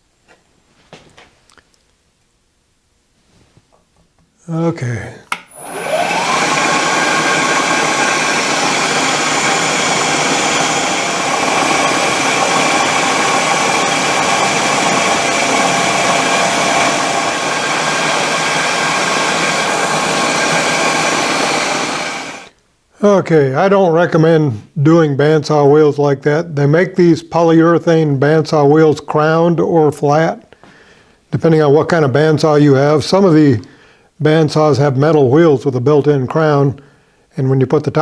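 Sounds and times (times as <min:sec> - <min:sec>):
bandsaw cutting with loud hiss: 0:05.4 - 0:22.5
electric motor whining: 0:05.4 - 0:22.5.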